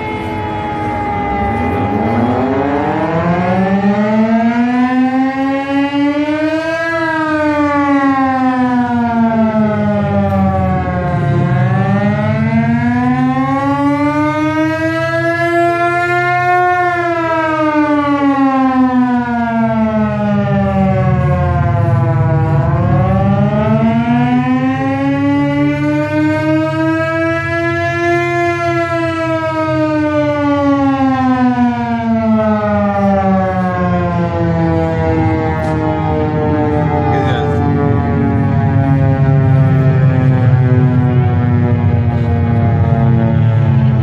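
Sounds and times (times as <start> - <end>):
air raid siren wailing: 0.0 - 44.0.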